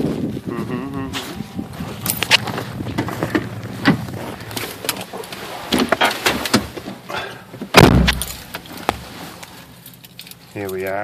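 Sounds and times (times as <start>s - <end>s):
door shutting with heavy thud: 7.7s - 8.3s.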